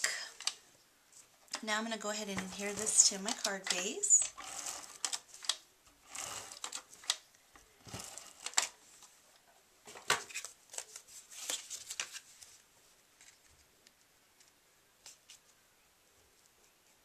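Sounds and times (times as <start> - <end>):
paper rustling and tapping: 9.9 - 12.5.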